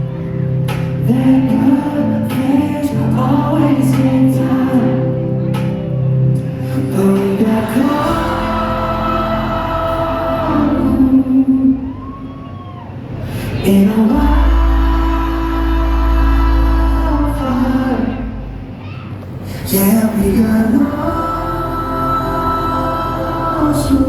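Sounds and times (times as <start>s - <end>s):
person singing: 0.0s - 12.0s, 13.5s - 18.8s, 19.4s - 24.0s
instrumental backing: 0.0s - 12.2s.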